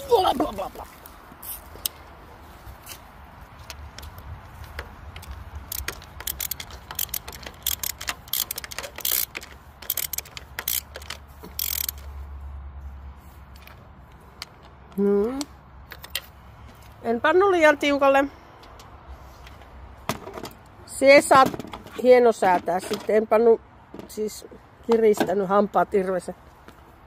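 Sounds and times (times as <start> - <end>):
ratchet wrench clicking: 4.7 - 12.1.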